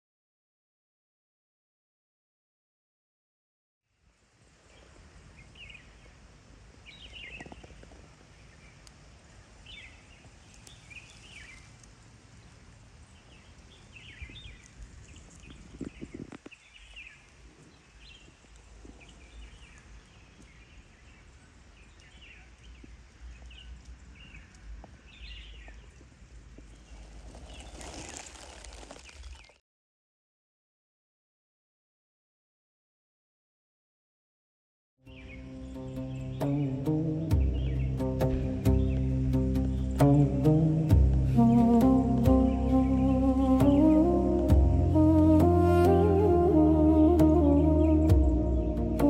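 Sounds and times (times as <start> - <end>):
small birds chirping: 4.6 - 29.6, 35.1 - 46.2
steady low rumble: 35.2 - 45.6.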